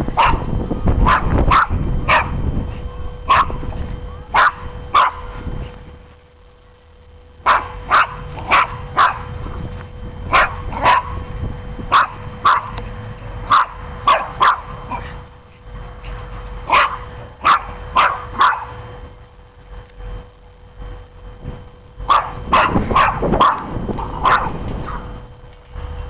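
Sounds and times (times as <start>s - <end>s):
dog barking: 0.2s - 2.4s, 3.3s - 3.6s, 4.3s - 5.3s, 7.4s - 9.3s, 10.3s - 11.2s, 11.9s - 12.8s, 13.5s - 15.2s, 16.7s - 18.8s, 22.1s - 25.1s.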